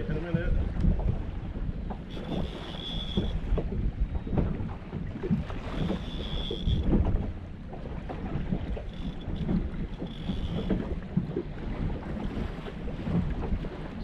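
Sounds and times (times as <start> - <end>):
water slapping against boat hull: 0.0 - 14.0
wind on microphone: 0.0 - 14.0
thin high whine: 2.1 - 3.5, 5.7 - 6.9.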